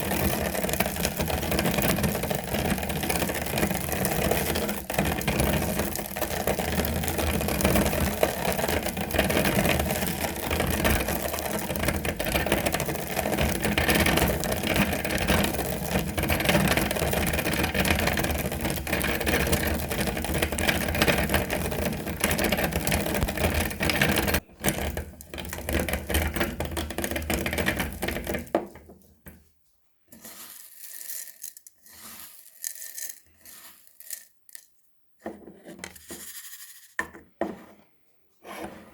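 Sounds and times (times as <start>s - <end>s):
electric meat grinder rattling: 0.0s - 24.4s
handling sounds: 30.1s - 37.0s.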